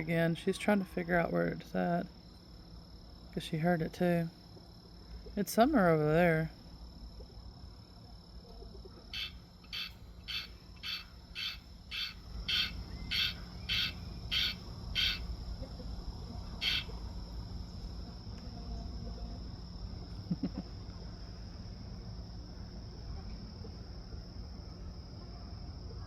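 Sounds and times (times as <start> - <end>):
night insects droning: 0.0 - 26.0
frog calling: 8.7 - 15.8, 16.5 - 17.0.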